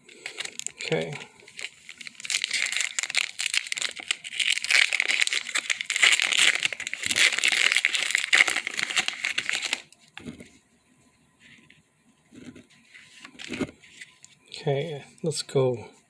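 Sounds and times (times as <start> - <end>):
foil pack crinkling: 0.0 - 10.4, 12.4 - 14.4.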